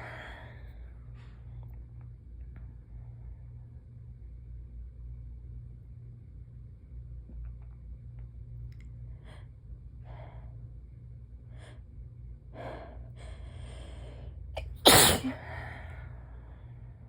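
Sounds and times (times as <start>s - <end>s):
person sneezing loudly: 14.6s - 15.4s
person inhaling before sneeze: 14.6s - 15.6s.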